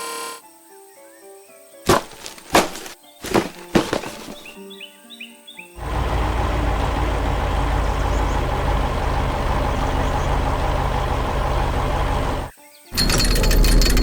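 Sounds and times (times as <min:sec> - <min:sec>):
diesel truck engine rumbling: 0:05.8 - 0:14.0.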